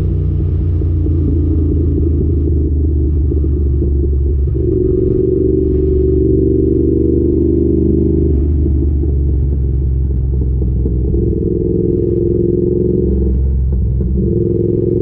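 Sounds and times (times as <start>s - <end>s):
motorcycle engine cruising: 0.0s - 15.0s.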